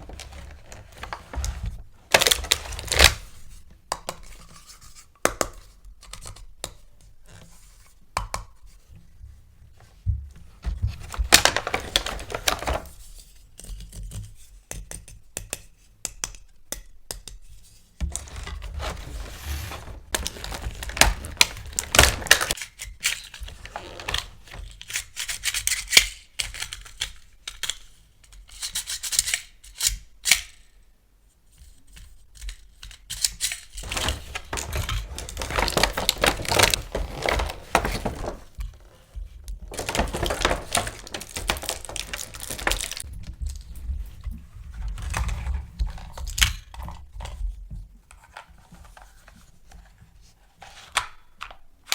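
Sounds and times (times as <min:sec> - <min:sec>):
rustling and scraping: 0:00.0 - 0:03.6, 0:18.0 - 0:22.6, 0:33.7 - 0:51.0
plastic packaging tearing: 0:02.1 - 0:03.2, 0:11.3 - 0:12.9, 0:18.2 - 0:22.6, 0:33.8 - 0:38.5, 0:39.7 - 0:43.1
plastic parts clicking: 0:39.6 - 0:43.6.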